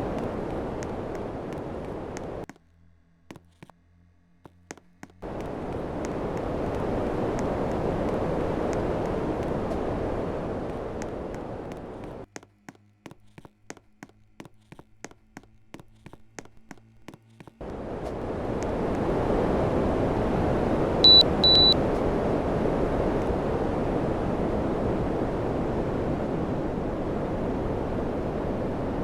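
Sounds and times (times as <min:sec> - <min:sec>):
air conditioner fan blowing: 0:00.0 - 0:02.4, 0:05.2 - 0:12.2, 0:17.6 - 0:29.0
faint hum: 0:00.0 - 0:03.2, 0:05.2 - 0:12.3, 0:17.6 - 0:29.0
short high beeps: 0:21.0 - 0:21.8.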